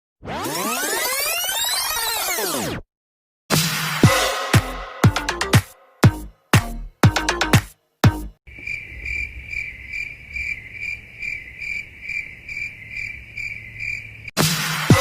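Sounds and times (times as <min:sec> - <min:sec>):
dance music beat: 0:03.5 - 0:08.4, 0:14.4 - 0:15.0
crickets chirping: 0:08.5 - 0:14.3.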